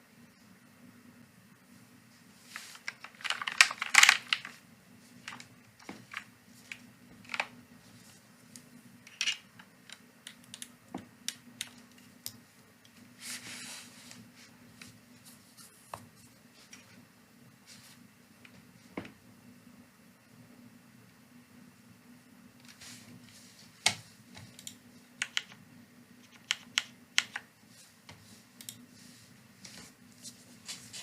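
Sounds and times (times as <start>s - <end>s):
mechanical keyboard typing: 2.9s - 4.6s, 9.1s - 12.0s, 24.5s - 25.6s, 26.2s - 27.5s.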